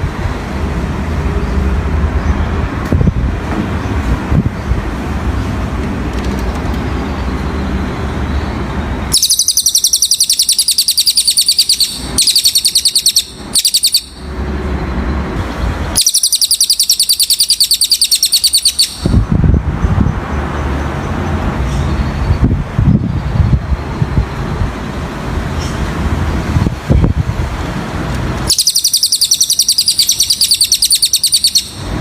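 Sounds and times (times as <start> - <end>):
road traffic rumble: 0.0 - 32.0
bird singing rapid trill: 6.8 - 19.3, 28.5 - 32.0.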